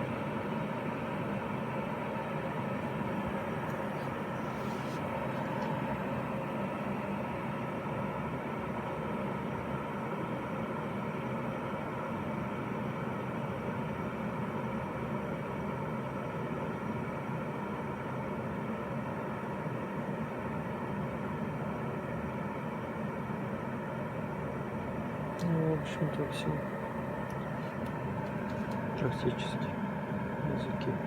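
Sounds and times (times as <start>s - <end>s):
electric kettle heating water: 0.0s - 31.0s.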